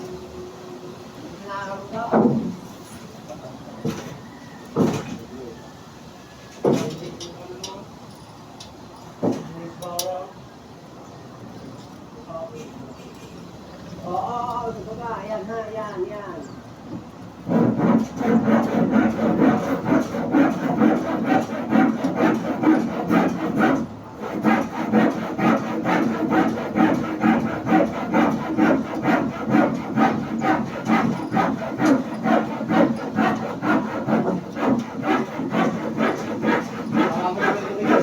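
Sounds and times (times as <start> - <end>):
hand saw cutting wood: 17.5 - 38.0.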